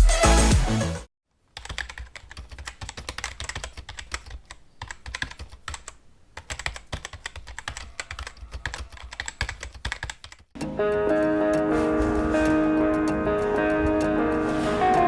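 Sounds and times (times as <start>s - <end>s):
keyboard typing clicks: 1.6s - 15.0s.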